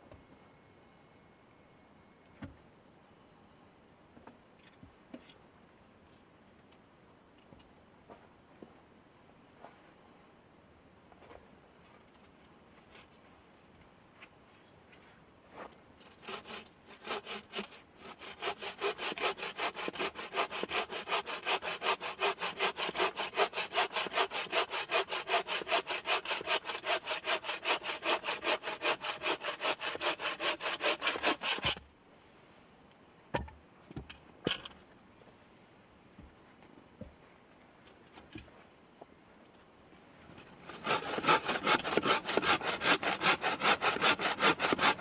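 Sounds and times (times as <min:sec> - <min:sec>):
saw cutting through wood: 0:16.1 - 0:31.8, 0:40.6 - 0:45.0.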